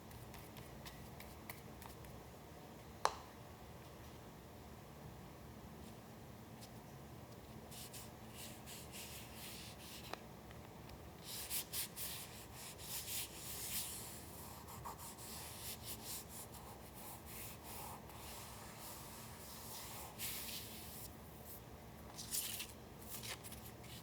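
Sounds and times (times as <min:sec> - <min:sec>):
paper rustling by hand: 0:22.1 - 0:24.0.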